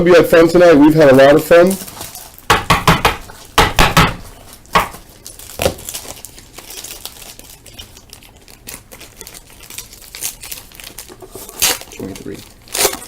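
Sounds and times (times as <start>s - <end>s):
foil wrapper crinkling and tearing: 1.2s - 2.5s, 4.2s - 13.0s.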